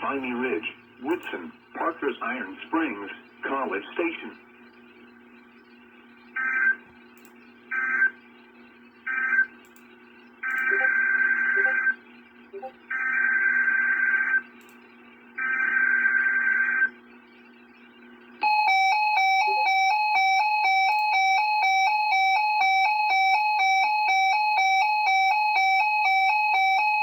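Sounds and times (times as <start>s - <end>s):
digital data bursts: 10.6s - 11.9s
two-pitch alert tone: 10.7s - 11.0s, 11.6s - 11.8s, 12.6s - 12.8s.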